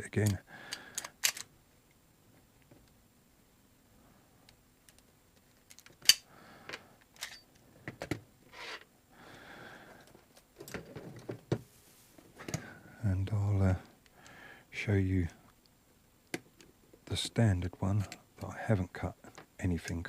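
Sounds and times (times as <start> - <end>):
pistol parts clicking: 0.2 - 1.5, 4.8 - 6.3
sliding and rubbing sounds: 10.9 - 12.5.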